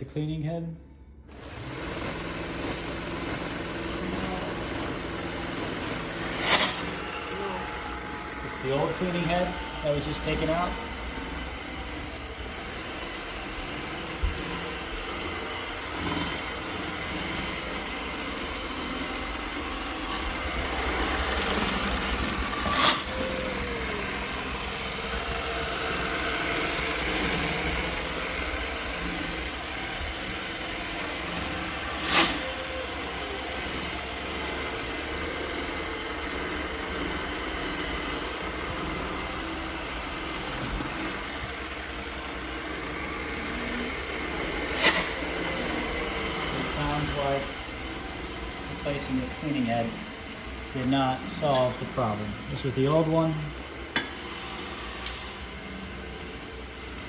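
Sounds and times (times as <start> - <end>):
robot vacuum humming and grinding: 1.3 - 57.0.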